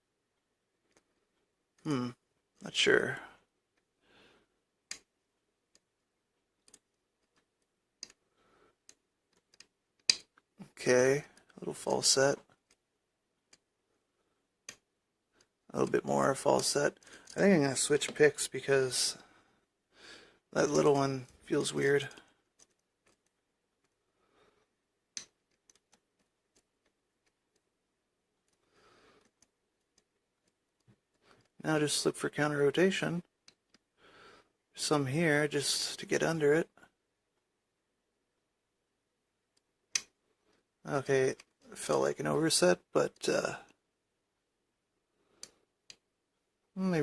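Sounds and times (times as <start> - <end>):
lock-picking tools clicking: 8.8 - 10.5.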